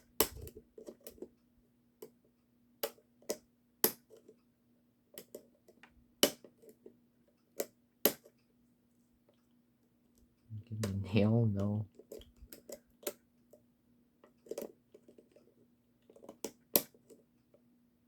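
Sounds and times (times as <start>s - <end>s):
faint steady hum: 6.8s - 14.3s.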